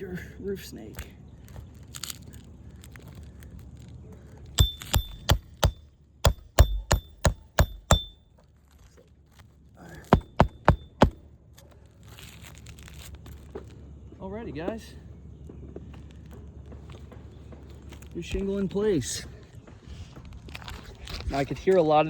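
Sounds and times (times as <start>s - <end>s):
hammer blows with metallic ring: 4.6s - 8.2s, 10.1s - 11.2s.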